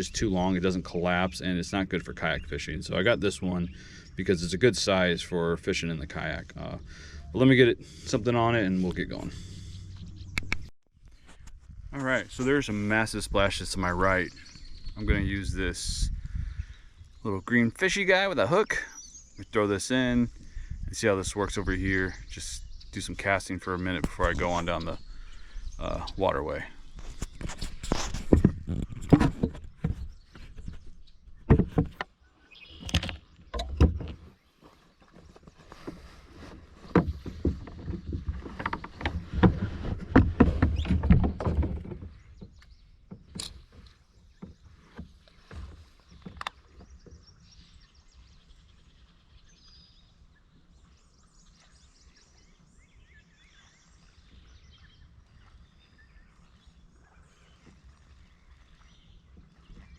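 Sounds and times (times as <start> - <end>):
gear knocking and rustling in kayak: 0.0 - 59.9
water sounds: 17.0 - 48.9, 50.6 - 59.9.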